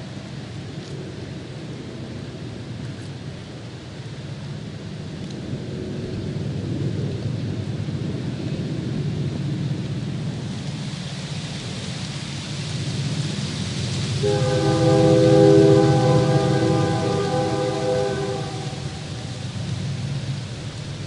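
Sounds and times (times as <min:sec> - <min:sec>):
approaching train rumble: 0:00.0 - 0:21.0
wind rustling leaves: 0:00.0 - 0:21.0
train horn chord: 0:14.2 - 0:19.8.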